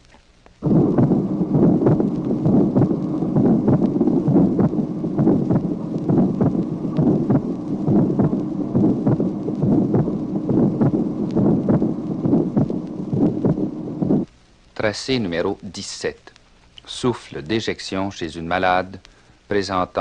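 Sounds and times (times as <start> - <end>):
low rumbling noise: 0.0 - 15.7
heartbeat: 0.6 - 14.3.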